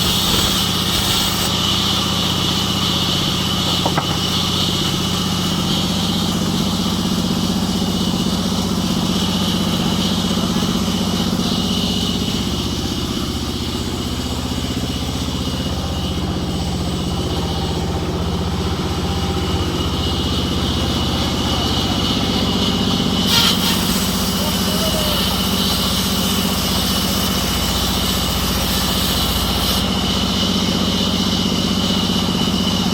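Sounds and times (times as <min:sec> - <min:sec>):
sawmill engine running: 0:00.0 - 0:32.9.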